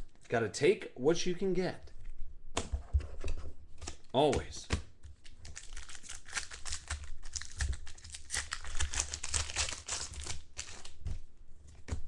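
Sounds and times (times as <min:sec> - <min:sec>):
plastic wrappers crinkling: 0:05.2 - 0:11.2.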